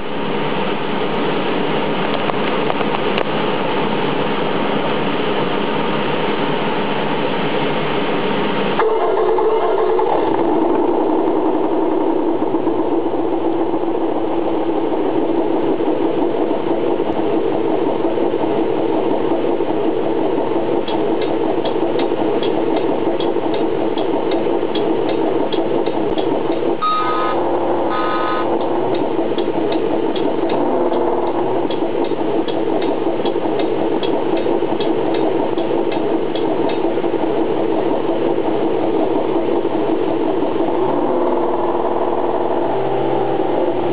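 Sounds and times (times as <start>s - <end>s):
electronic engine sound effect: 8.8s - 43.9s
light ticking: 20.8s - 26.7s.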